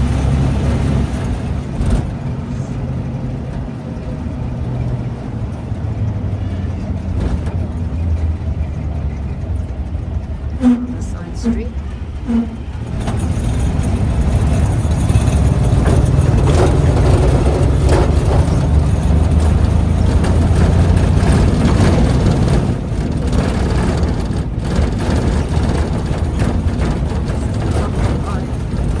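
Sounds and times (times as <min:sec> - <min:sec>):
motor rickshaw rumbling: 0:00.0 - 0:29.0
rattles and knocks over road: 0:00.0 - 0:29.0.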